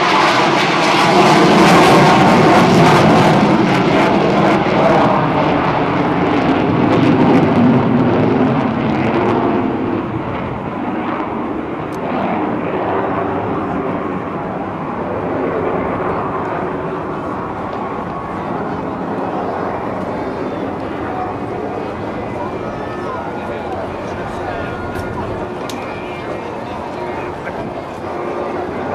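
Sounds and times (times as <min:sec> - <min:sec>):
jet aircraft flying by: 0:00.0 - 0:28.9.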